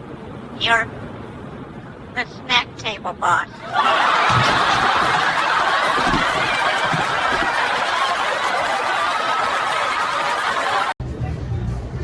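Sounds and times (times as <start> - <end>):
people laughing: 3.6 - 11.0.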